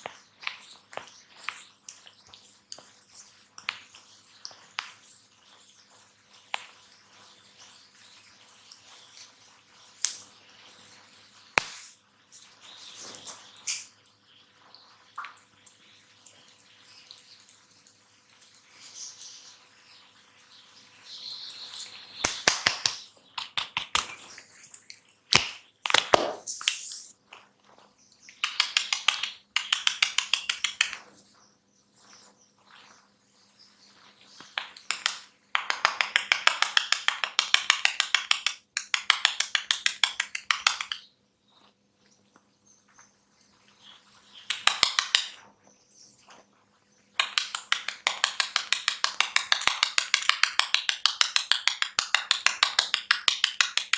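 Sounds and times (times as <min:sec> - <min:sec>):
hands snapping on scalp: 0:11.6 - 0:11.9, 0:22.2 - 0:24.4, 0:25.3 - 0:27.1, 0:28.3 - 0:31.0, 0:34.4 - 0:41.0, 0:44.5 - 0:45.4, 0:47.2 - 0:53.9.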